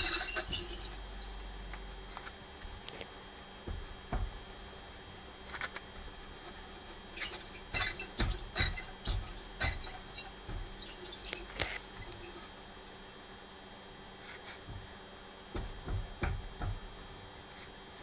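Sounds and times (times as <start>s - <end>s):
car transmission squeaking: 7.2s - 12.6s.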